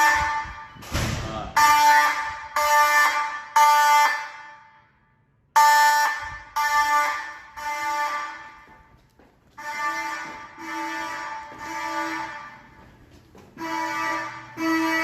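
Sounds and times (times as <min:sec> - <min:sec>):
fire alarm tone pulses: 0:01.5 - 0:04.8, 0:05.6 - 0:08.9, 0:09.6 - 0:12.9.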